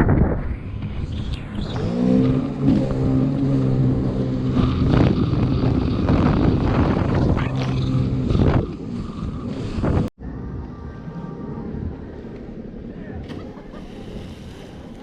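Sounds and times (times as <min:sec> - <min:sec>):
jet ski engine running: 0:01.8 - 0:12.2.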